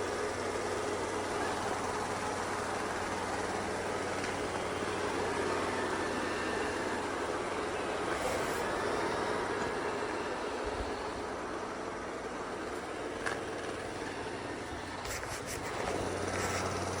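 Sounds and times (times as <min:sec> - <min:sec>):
robot vacuum motor whir: 0:01.4 - 0:11.3.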